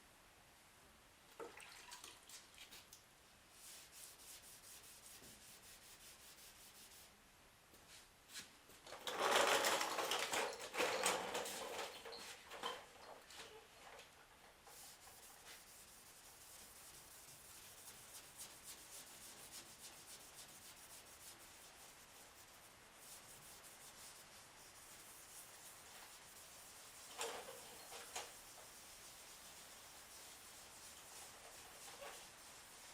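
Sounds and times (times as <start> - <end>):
hand sanding with sanding block: 3.5 - 7.2, 14.7 - 32.9.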